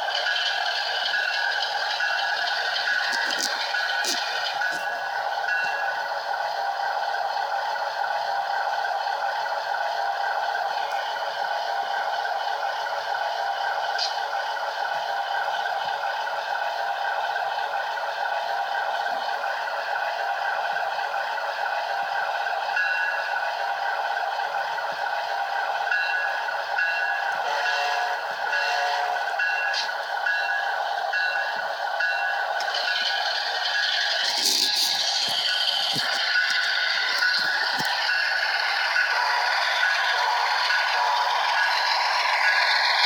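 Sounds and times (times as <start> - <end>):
steady train tones: 0.0 - 43.0.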